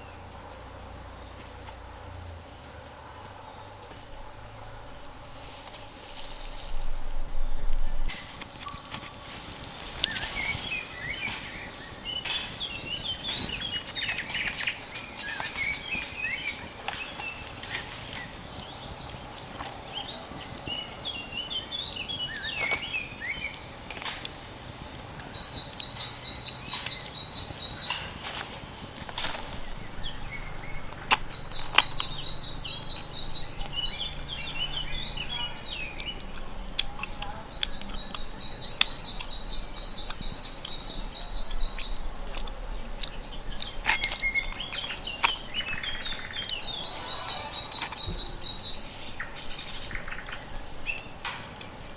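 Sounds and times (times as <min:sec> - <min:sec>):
birds chirping: 0:00.0 - 0:51.9
high bird trill: 0:25.1 - 0:42.1, 0:43.1 - 0:51.9.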